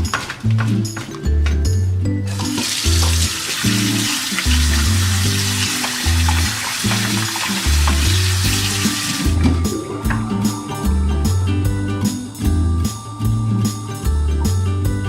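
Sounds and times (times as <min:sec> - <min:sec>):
food sizzling in frying pan: 0:02.3 - 0:09.4.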